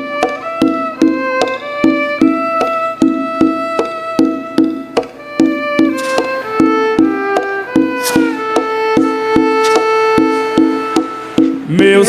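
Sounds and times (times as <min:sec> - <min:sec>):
fiddle-like folk melody over beat: 0:00.0 - 0:12.0.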